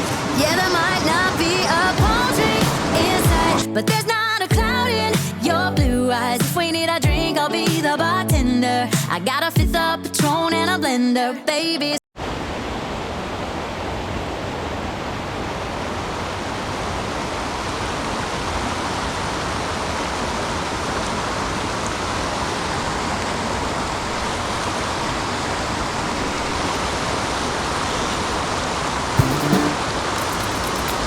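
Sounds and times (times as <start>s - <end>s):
mountain stream rushing: 0.0s - 3.8s, 12.2s - 31.0s.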